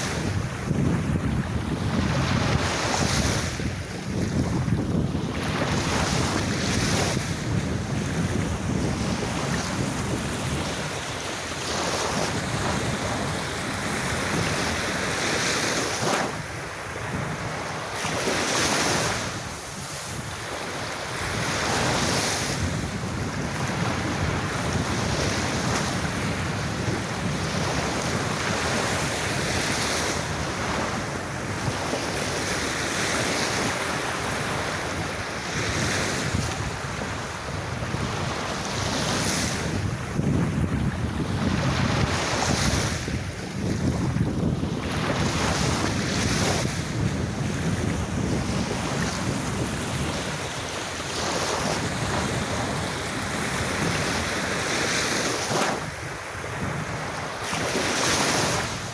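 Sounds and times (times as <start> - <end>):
sea waves breaking on beach: 0.0 - 58.9
wind buffeting microphone: 0.0 - 58.9.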